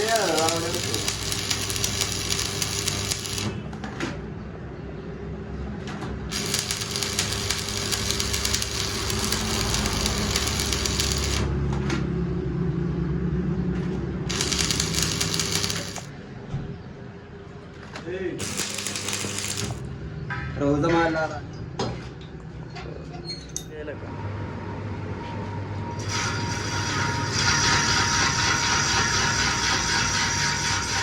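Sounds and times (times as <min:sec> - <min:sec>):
harsh crackling hiss: 0:00.0 - 0:03.5
electrical hum: 0:00.0 - 0:03.7, 0:06.3 - 0:11.5, 0:14.3 - 0:16.1, 0:18.4 - 0:19.9.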